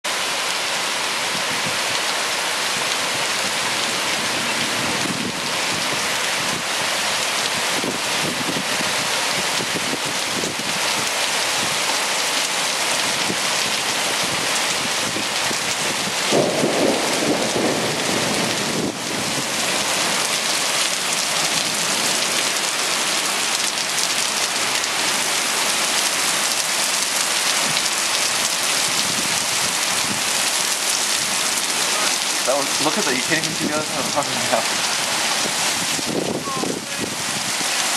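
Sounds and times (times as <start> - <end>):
heavy rain pouring: 0.0 - 37.9
thunder clap: 16.2 - 20.3.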